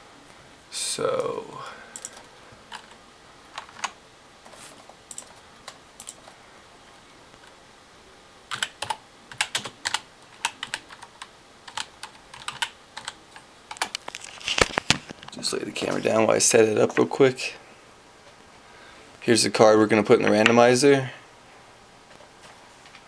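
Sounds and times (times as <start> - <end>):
typing on computer keyboard: 2.0 - 3.0, 5.1 - 5.4, 6.0 - 6.4, 8.5 - 14.0.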